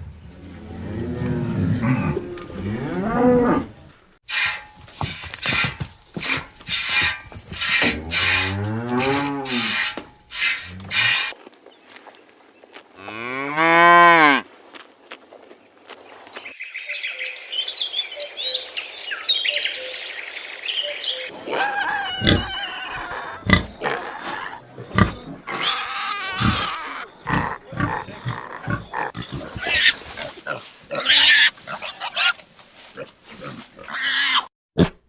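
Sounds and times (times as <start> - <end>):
cow mooing: 0.6 - 3.8, 7.8 - 9.9.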